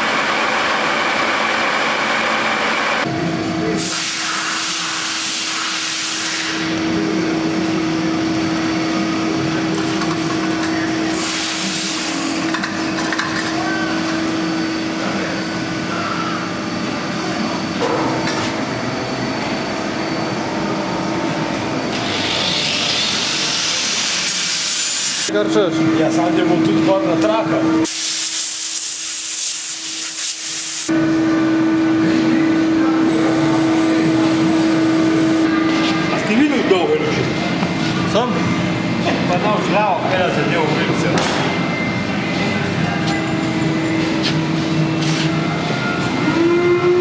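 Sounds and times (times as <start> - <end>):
lathe cutting noise: 0.0 - 3.1, 18.4 - 27.9
lathe machine hum: 0.0 - 3.6, 6.7 - 27.9.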